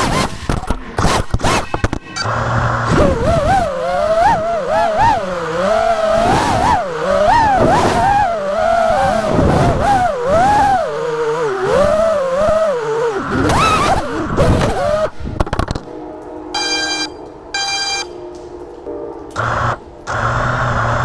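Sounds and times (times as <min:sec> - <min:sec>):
drone motors whining: 0:01.4 - 0:15.8, 0:19.4 - 0:21.0.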